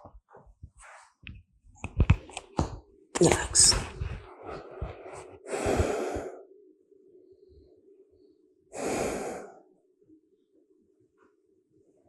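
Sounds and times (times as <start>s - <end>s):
person breathing deeply: 4.0s - 6.6s, 8.7s - 9.8s.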